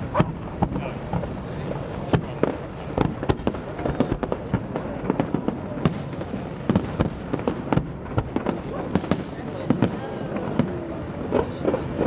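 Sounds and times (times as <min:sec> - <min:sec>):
fireworks cracks and bangs: 0:00.0 - 0:12.0
rumble of distant explosions: 0:00.0 - 0:12.0.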